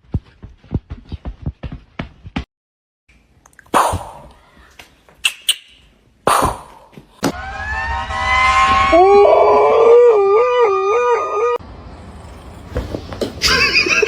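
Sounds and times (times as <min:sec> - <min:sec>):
pet howling: 0:08.8 - 0:12.9.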